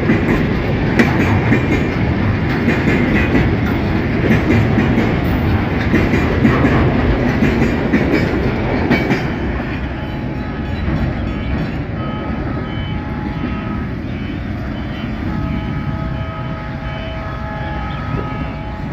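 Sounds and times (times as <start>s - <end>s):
wheels clicking over rail joints: 0.0s - 12.4s
freight train rolling past: 0.0s - 18.9s.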